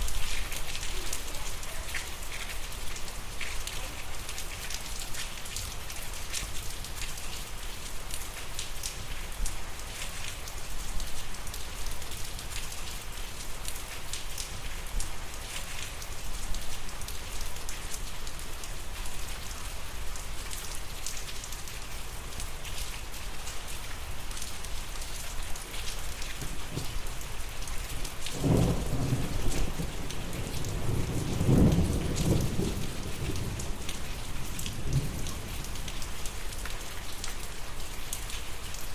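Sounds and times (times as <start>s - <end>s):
steady rain falling: 0.0s - 38.9s
low thunder rumbles: 28.4s - 36.0s.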